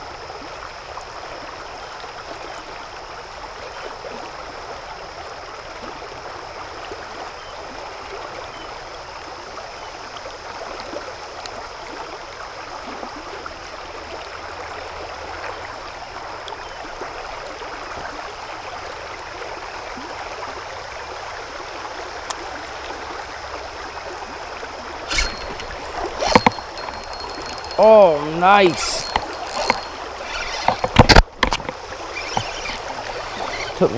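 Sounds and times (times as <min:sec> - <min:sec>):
creek water running: 0:00.0 - 0:33.9
thin steady high tone: 0:25.1 - 0:31.0.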